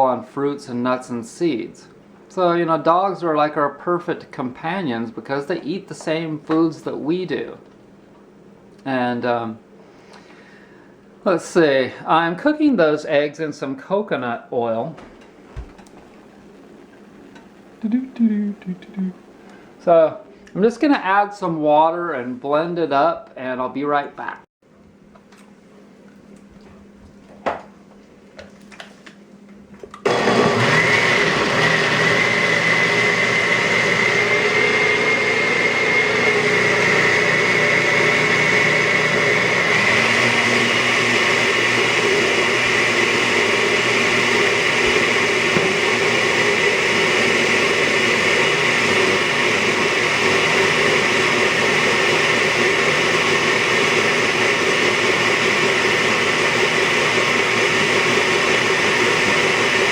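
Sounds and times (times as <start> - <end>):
blender running: 30.0 - 59.9.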